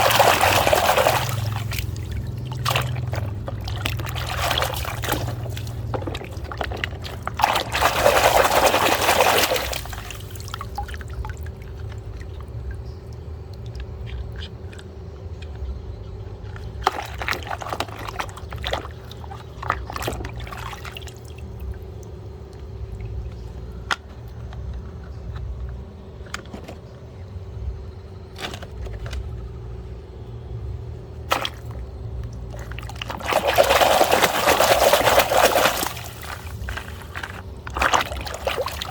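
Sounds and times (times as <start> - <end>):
water pouring: 0.0 - 14.9, 16.5 - 22.1, 31.2 - 38.9
faint steady hum: 0.0 - 38.9.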